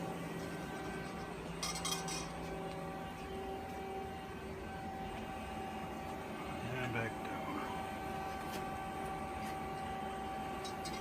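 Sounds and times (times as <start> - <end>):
steady background hum: 0.0 - 11.0.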